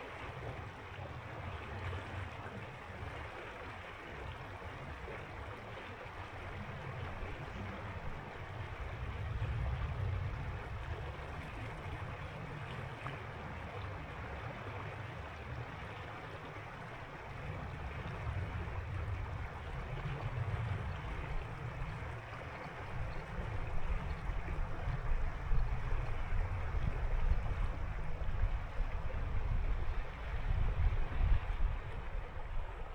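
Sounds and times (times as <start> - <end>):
low rumbling gusts: 6.3 - 13.0, 17.2 - 32.9.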